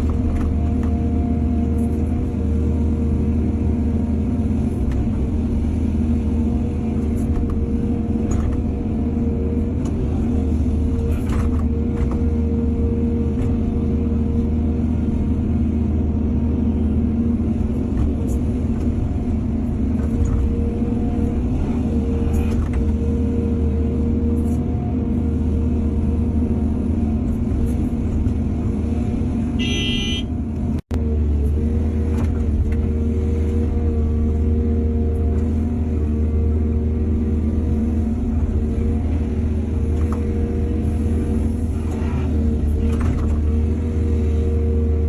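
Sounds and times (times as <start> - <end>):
diesel engine humming: 0.0 - 45.0.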